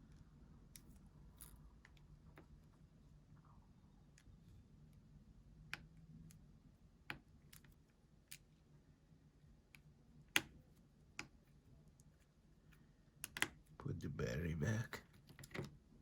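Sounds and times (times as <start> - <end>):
small clicks and taps of tools: 5.7 - 6.4, 9.7 - 13.7.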